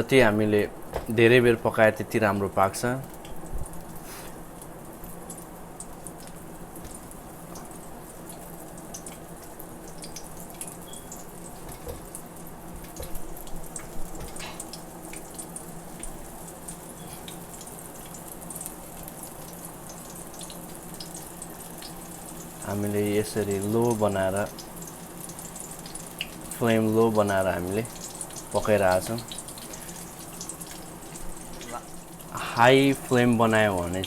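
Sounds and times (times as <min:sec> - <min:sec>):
food sizzling in hot oil: 0:03.0 - 0:34.0.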